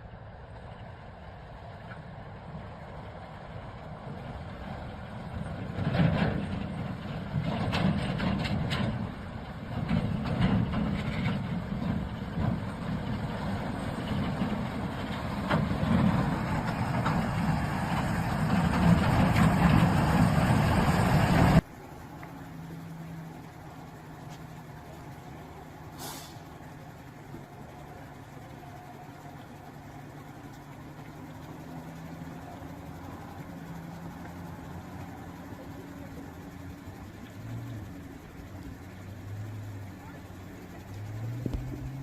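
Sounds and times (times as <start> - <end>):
truck engine rumbling: 0.0 - 42.0.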